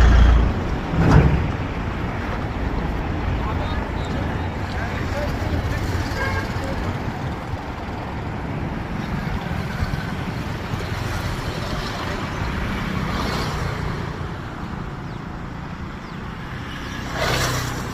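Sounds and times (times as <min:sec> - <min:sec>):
train rumbling over bridge: 0:00.0 - 0:03.4.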